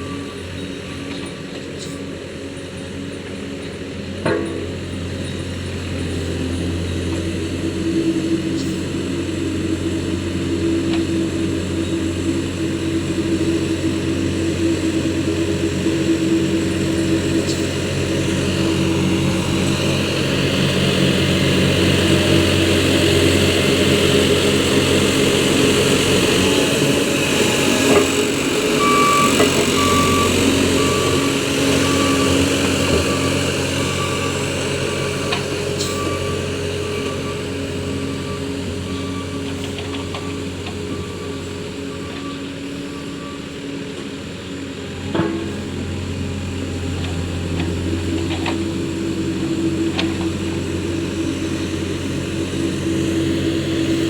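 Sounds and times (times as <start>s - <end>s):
reversing alarm beeping: 0.0s - 2.1s, 13.6s - 44.3s
heavy machine engine running: 0.0s - 54.0s.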